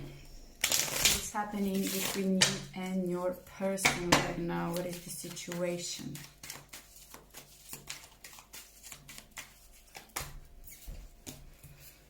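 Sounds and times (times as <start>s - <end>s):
cards shuffling: 4.6s - 11.4s.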